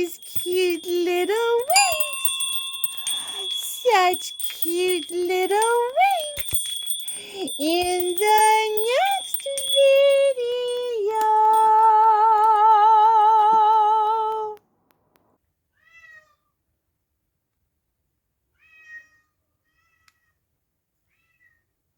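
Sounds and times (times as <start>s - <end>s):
person singing high note with vibrato: 0.0s - 14.6s
faint cat meows: 15.7s - 16.6s, 18.5s - 20.4s, 21.0s - 21.7s.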